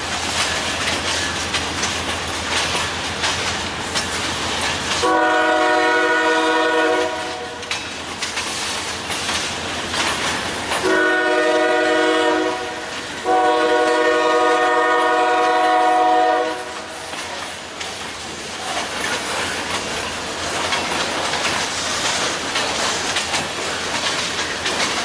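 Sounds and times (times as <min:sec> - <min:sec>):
locomotive air horn blasts: 0:05.0 - 0:07.6, 0:10.8 - 0:17.0.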